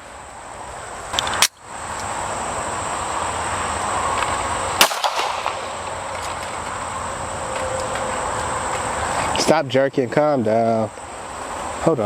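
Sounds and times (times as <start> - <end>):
insects chirring: 0.0 - 12.0
pistol shot: 4.8 - 5.8.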